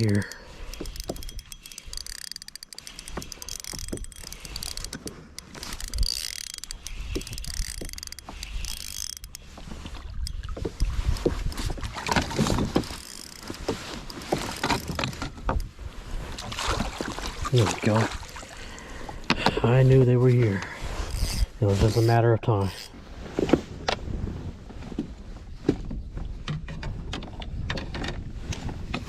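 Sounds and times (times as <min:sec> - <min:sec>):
fishing reel clicking: 0:00.0 - 0:09.6, 0:12.8 - 0:15.0, 0:21.0 - 0:22.9
wind buffeting microphone: 0:09.8 - 0:12.8.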